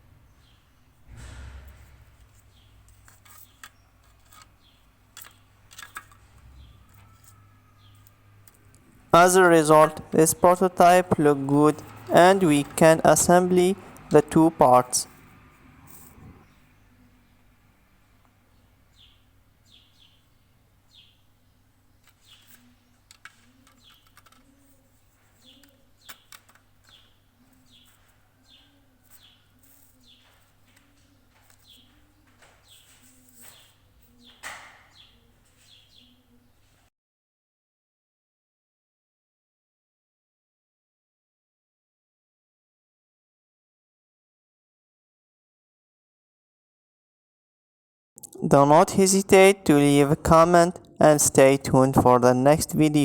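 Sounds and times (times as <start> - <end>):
birds chirping: 0.0 - 1.0, 2.2 - 15.1, 16.1 - 36.6.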